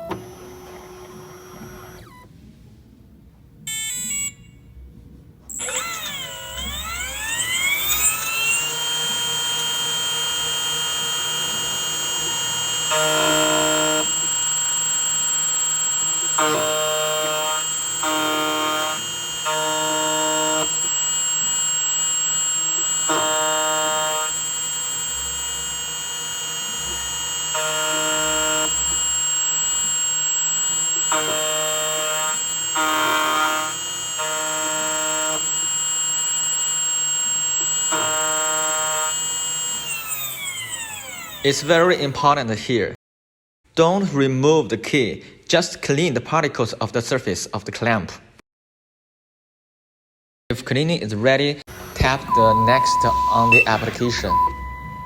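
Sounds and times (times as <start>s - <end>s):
key cutting machine motor whine: 0.0s - 2.3s, 5.5s - 42.3s, 51.7s - 55.0s
strong cutting tone: 5.5s - 42.4s, 51.7s - 55.0s.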